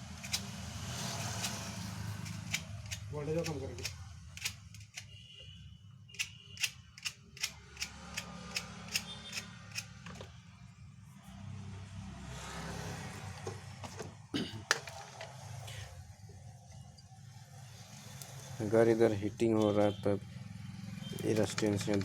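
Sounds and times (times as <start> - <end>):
sharp clicks: 1.4 - 5.1, 6.1 - 10.0.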